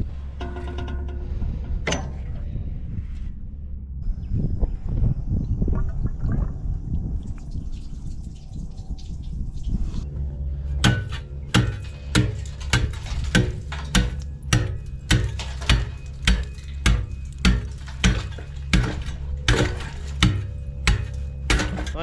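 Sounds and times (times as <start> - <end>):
low steady hum: 0.0 - 22.0
sharp knocks: 10.8 - 22.0.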